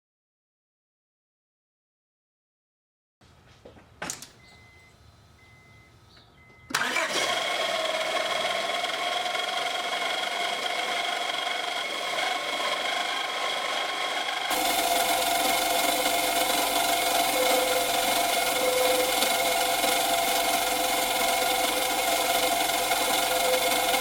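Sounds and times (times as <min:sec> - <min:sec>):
alternator grinding rattle and whine: 0:04.2 - 0:24.0
faint beeping chime: 0:04.4 - 0:06.7
car engine starting: 0:04.4 - 0:24.0.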